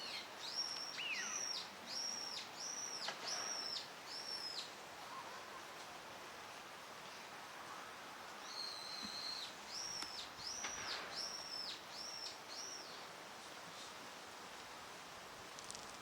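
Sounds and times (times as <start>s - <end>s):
steady background hiss: 0.0s - 16.0s.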